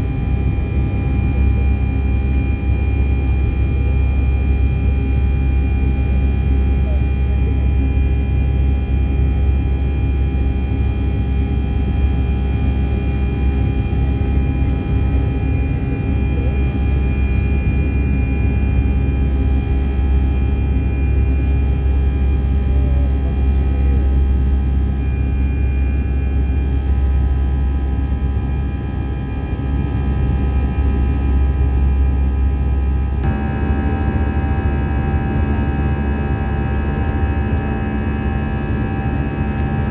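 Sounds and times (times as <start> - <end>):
jet engine drone and rumble: 0.0 - 39.9
steady whining tones: 25.0 - 39.9.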